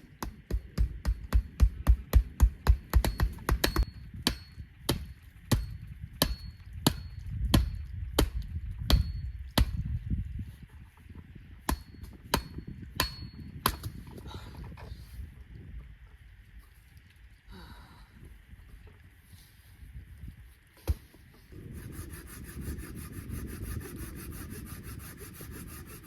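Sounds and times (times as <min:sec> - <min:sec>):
tool striking wood: 0:00.2 - 0:09.8, 0:11.7 - 0:14.0.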